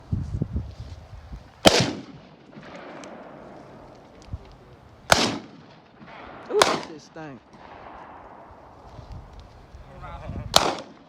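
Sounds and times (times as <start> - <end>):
gunshot with echo: 1.6 - 3.4, 5.1 - 8.5, 10.5 - 11.0.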